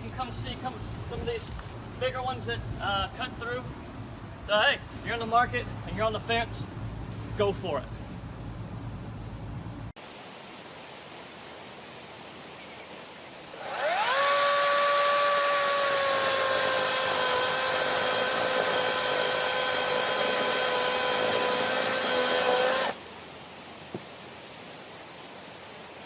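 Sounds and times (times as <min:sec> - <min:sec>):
electric chainsaw whine: 0:13.6 - 0:23.0.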